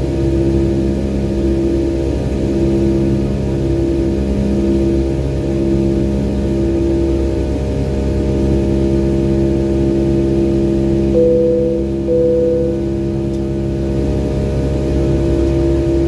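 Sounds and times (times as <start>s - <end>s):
airplane cabin engine drone: 0.0s - 16.0s
short high steady tone: 11.2s - 13.0s.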